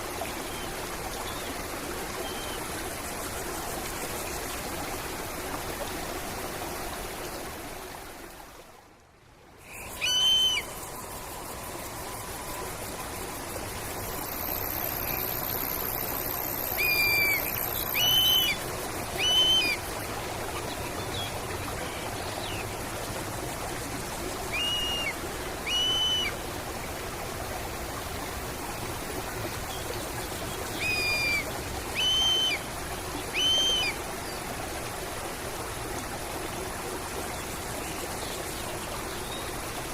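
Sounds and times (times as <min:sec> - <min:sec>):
stream running: 0:00.0 - 0:39.9
bird whistled calls: 0:09.7 - 0:11.0, 0:16.6 - 0:18.6, 0:19.2 - 0:19.8, 0:24.5 - 0:26.4, 0:30.8 - 0:32.6, 0:33.3 - 0:34.0.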